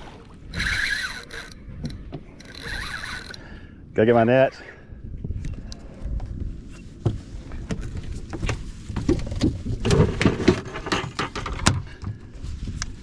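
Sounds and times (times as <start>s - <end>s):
knocks and clatter on boat deck: 7.0s - 12.3s.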